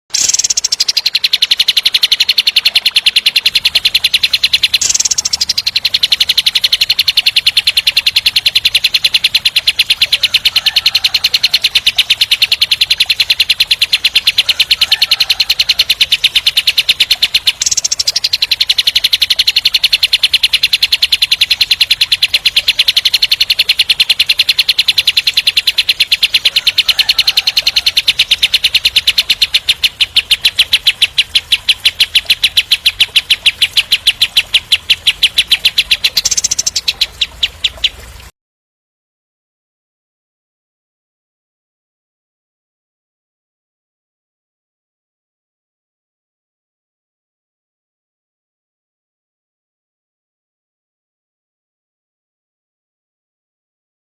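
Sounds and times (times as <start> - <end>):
bird singing rapid harsh notes: 0.1 - 38.3.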